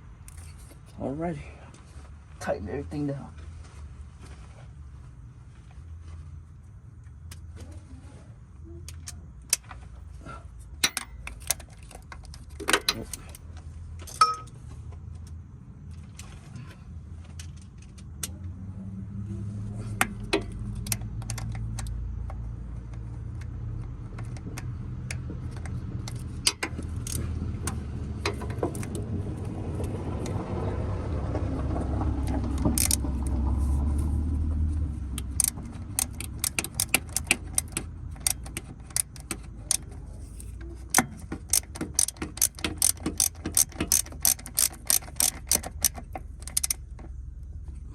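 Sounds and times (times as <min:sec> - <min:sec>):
metal tools clinking: 0:10.8 - 0:13.4, 0:14.0 - 0:14.6
socket ratchet clicking: 0:19.9 - 0:23.5, 0:24.2 - 0:29.0, 0:32.5 - 0:33.4, 0:35.1 - 0:47.1.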